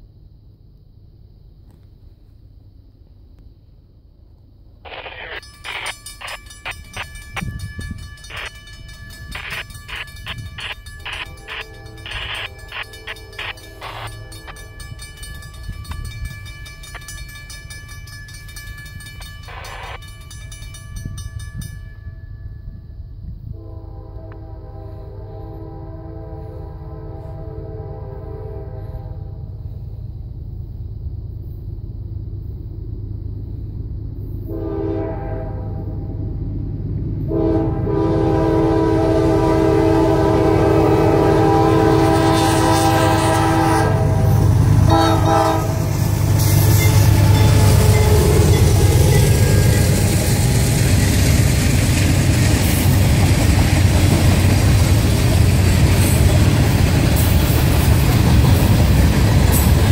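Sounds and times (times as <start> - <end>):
locomotive engine rumble: 4.1 - 21.7, 23.5 - 59.9
train cars rolling past: 4.8 - 59.9
train air horn blasts: 9.3 - 14.7, 23.5 - 29.5, 34.5 - 36.2, 37.3 - 50.6.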